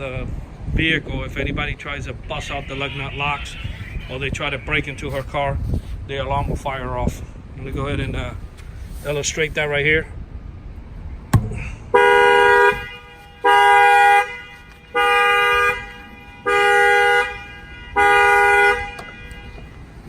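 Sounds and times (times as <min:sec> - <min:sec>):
car horn honking: 0:02.2 - 0:05.0, 0:11.6 - 0:20.0
sharp knock: 0:11.3 - 0:11.8.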